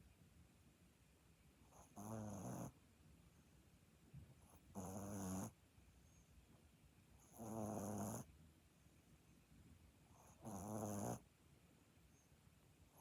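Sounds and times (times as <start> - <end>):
puppy snoring: 1.7 - 2.8, 4.4 - 5.6, 7.2 - 8.3, 10.1 - 11.3.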